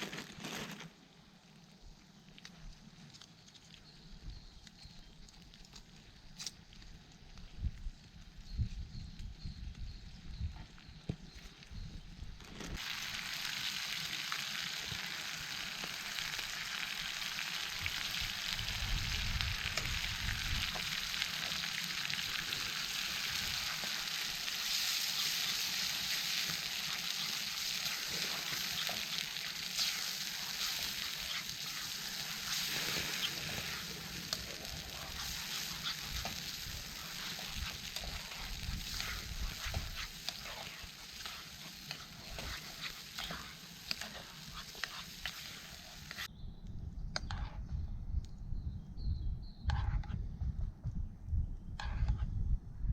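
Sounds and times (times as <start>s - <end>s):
fire crackling and popping: 0.0s - 9.4s, 11.2s - 46.3s
food sizzling in a pan: 12.7s - 46.3s.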